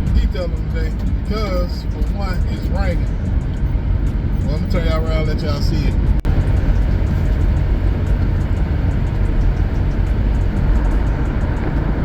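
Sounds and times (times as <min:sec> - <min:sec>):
low rumble: 0:00.0 - 0:12.0.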